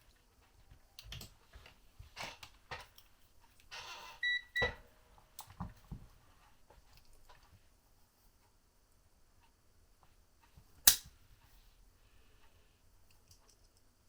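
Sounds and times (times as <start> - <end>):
multimeter high beeps: 4.2 - 4.7.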